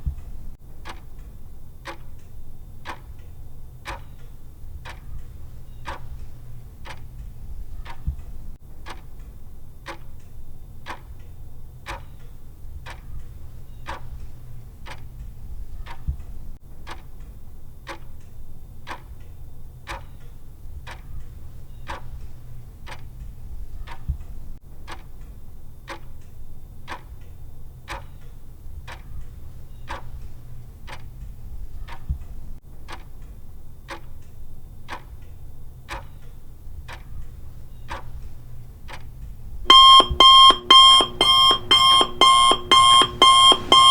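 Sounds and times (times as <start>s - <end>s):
clock ticking: 0.0s - 18.2s, 18.9s - 19.2s, 19.9s - 20.2s, 20.8s - 25.2s, 25.9s - 26.2s, 26.8s - 27.3s, 27.9s - 28.2s, 28.8s - 43.9s
low steady hum: 36.4s - 43.9s.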